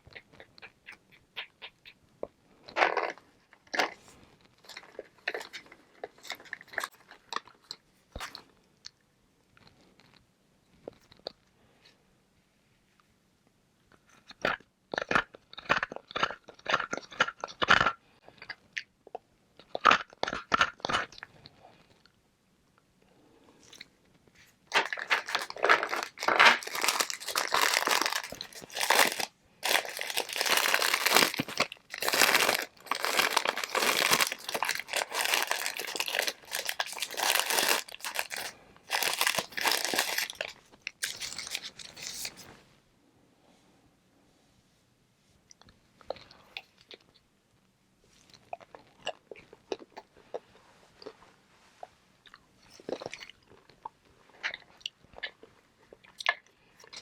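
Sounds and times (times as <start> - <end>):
crunching chewing: 23.6 - 42.4, 48.2 - 51.2, 51.8 - 57.0
ice balls cracking between teeth: 24.7 - 41.9.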